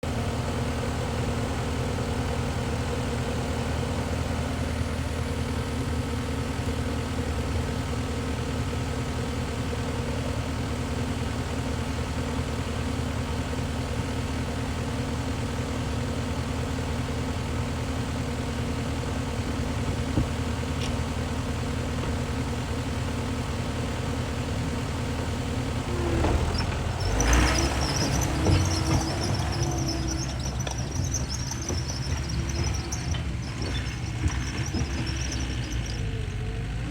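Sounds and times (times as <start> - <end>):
skid steer engine running: 0.0 - 36.9
knocks and clatter: 19.6 - 22.4, 26.1 - 36.0.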